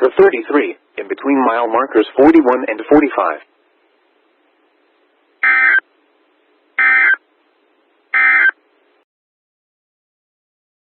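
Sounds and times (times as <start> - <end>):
short loud data tone bursts: 5.4 - 5.8, 6.8 - 7.2, 8.2 - 8.6.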